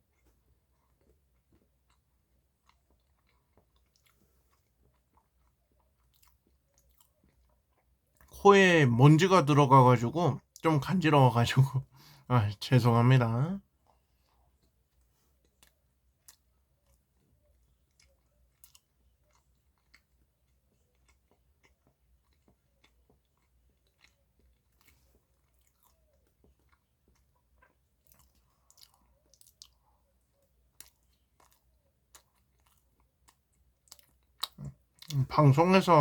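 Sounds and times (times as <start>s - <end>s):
faint chewing: 0.0s - 8.4s, 13.6s - 36.0s
mouth clicks and smacks: 33.9s - 35.4s.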